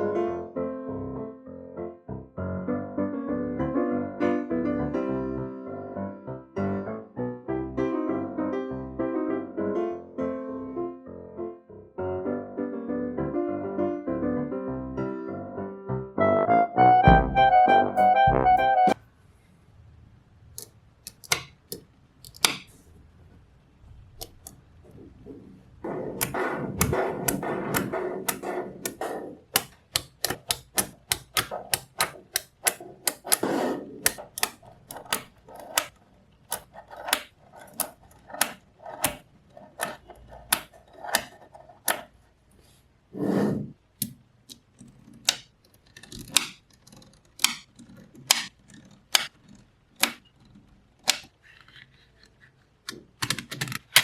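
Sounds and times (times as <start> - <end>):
magnetic balls clicking together: 26.1 - 42.2, 44.0 - 51.4.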